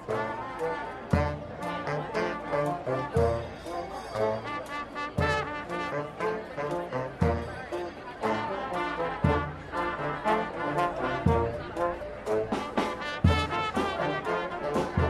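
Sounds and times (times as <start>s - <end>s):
brass marching band playing: 0.0s - 15.0s
heavy low drum beat: 8.8s - 15.0s.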